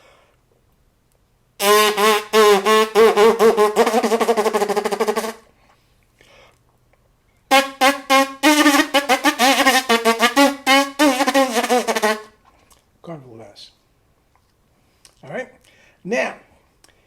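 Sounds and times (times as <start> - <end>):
trumpet fast repeated notes: 1.6 - 5.4, 7.5 - 12.3.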